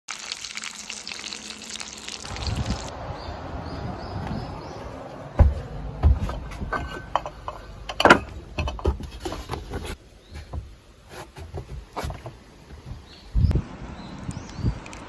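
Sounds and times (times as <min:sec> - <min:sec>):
heavy thumps: 0:05.4 - 0:10.7
irregular knocks and clicks: 0:05.4 - 0:10.7.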